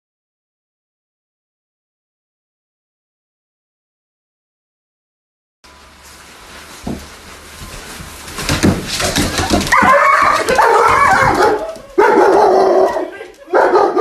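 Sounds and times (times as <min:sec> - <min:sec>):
clicks and shuffling: 0:05.7 - 0:14.0
dog whining howls: 0:09.7 - 0:14.0.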